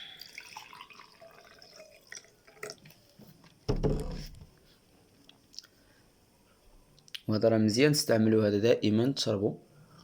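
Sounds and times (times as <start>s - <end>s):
liquid pouring and sloshing: 0.0s - 3.1s
loud thump: 3.7s - 4.5s.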